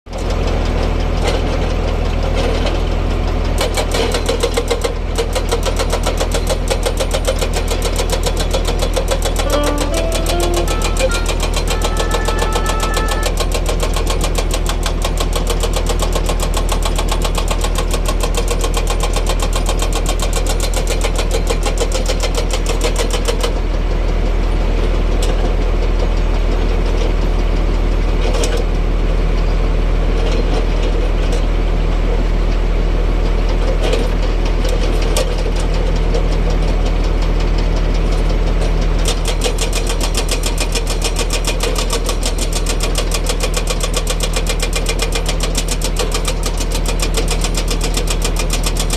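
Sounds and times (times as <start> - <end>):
diesel engine running: 0.1 - 18.2
hydraulic hammer pounding: 3.6 - 17.4.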